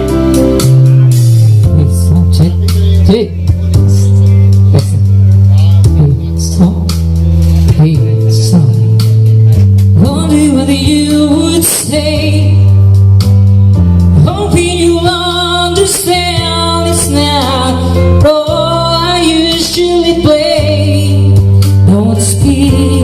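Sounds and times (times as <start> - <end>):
heavy sustained bass notes: 0.0 - 23.0
song with woman singing: 10.0 - 12.8, 14.2 - 23.0.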